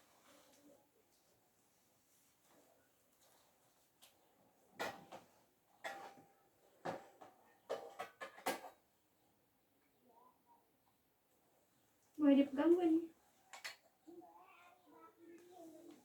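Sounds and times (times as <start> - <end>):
hard objects clattering and clinking: 5.8 - 8.8.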